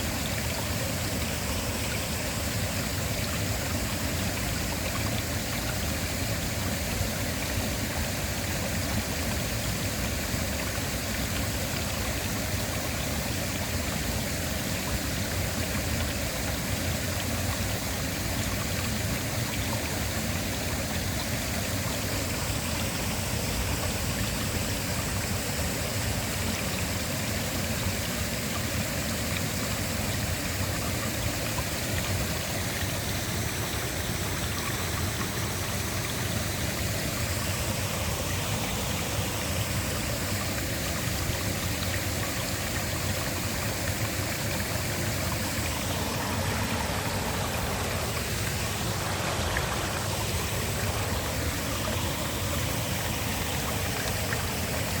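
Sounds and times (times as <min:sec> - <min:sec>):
waterfall rushing: 0:33.4 - 0:55.0.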